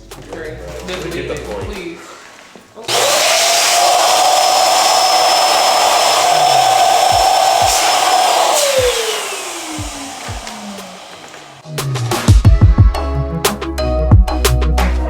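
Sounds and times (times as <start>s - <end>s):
appliance motor whining and winding down: 2.9s - 11.7s.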